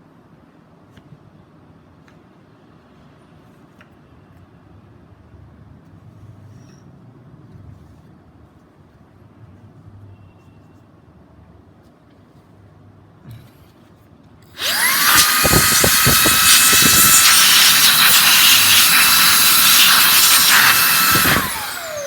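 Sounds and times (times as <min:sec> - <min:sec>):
angle grinder motor whine: 0:14.6 - 0:22.0.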